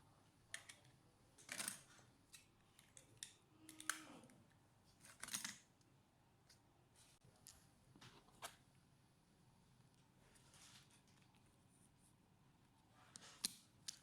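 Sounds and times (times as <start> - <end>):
small laptop parts clicking: 0.5 - 4.1, 5.1 - 5.7.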